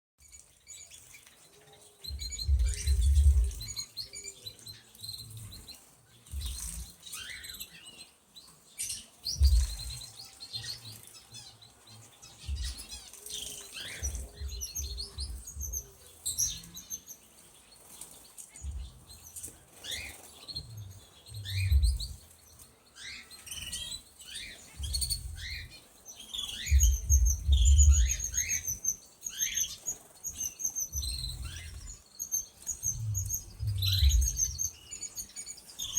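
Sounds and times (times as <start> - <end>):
canaries chirping and trilling: 0.2 - 35.9.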